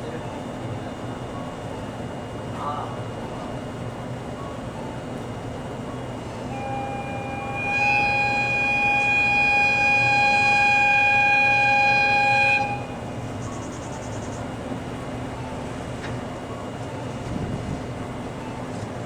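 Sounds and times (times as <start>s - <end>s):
locomotive engine running: 3.1s - 19.0s
locomotive whistle blast: 6.4s - 13.4s.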